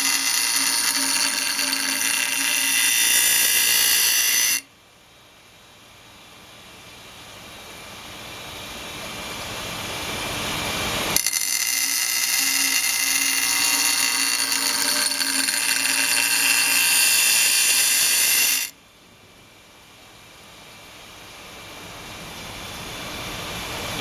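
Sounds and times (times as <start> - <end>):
knife grinding hiss: 0.0 - 4.6, 11.2 - 18.7
sharpening grinder running: 0.0 - 4.7, 11.2 - 18.7.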